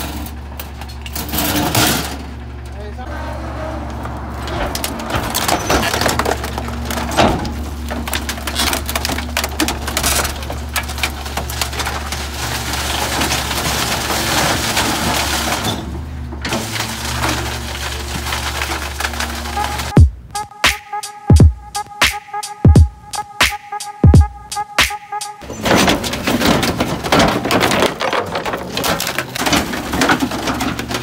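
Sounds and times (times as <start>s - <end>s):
truck engine and hydraulics running: 0.0s - 22.0s, 24.3s - 31.0s
wood cracking and splintering: 4.0s - 20.0s, 25.4s - 31.0s.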